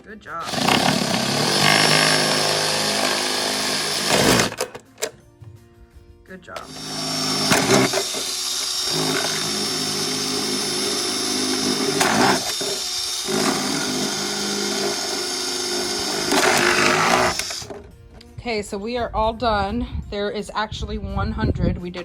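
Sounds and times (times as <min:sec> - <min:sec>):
electric drill running: 0:00.4 - 0:04.6, 0:06.6 - 0:17.8.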